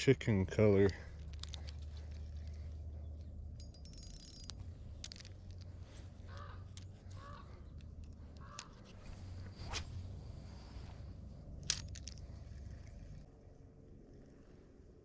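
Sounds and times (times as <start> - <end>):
steady low rumble: 0.0 - 15.0
ticking rattle: 0.7 - 8.9.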